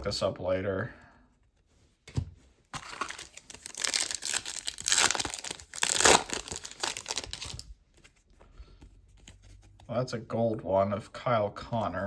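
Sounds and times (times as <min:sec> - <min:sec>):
wrapper tearing and crinkling: 0:02.8 - 0:07.7.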